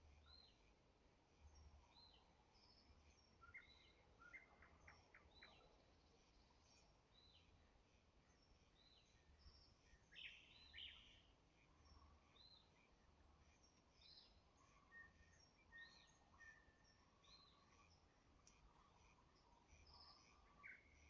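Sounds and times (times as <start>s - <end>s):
nightingale singing: 8.8s - 11.3s, 14.0s - 21.0s.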